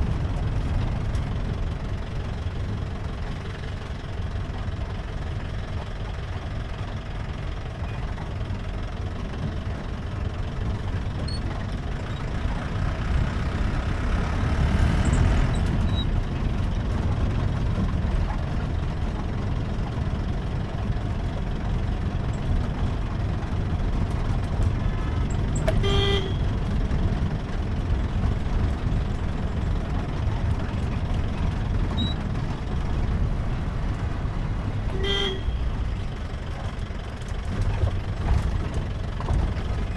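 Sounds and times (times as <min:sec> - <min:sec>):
vehicle engine and road noise: 0:00.0 - 0:39.9
short vehicle horn toot: 0:25.6 - 0:26.6, 0:34.9 - 0:35.8.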